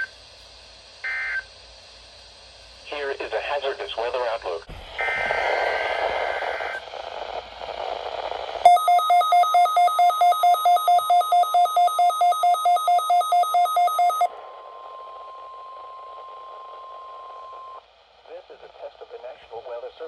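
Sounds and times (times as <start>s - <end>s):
radio hiss: 0.0s - 8.7s, 14.3s - 20.0s
steady warning alarm tone: 8.6s - 14.3s
shrill electronic alarm beeping: 8.7s - 14.3s.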